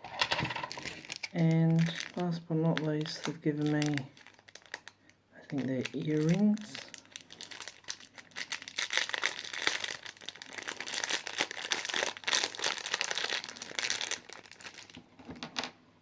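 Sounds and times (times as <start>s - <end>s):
packaging crinkling: 0.1s - 15.6s.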